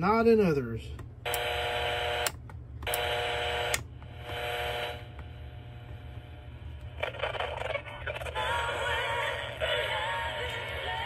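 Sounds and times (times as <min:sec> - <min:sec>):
low hum: 0:00.8 - 0:11.0
buzzer click: 0:01.3 - 0:01.5, 0:02.2 - 0:04.5
alarm clock buzzer beeping: 0:01.3 - 0:02.3.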